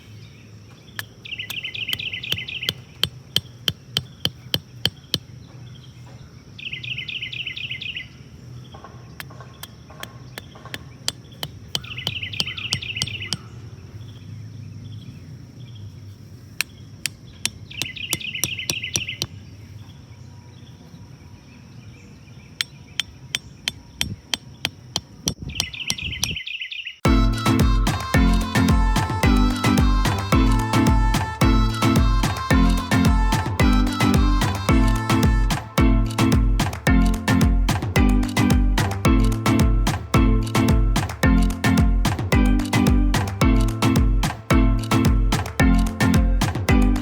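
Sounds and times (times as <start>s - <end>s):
sharp taps like light hammering: 1.0s - 5.3s, 17.1s - 19.3s.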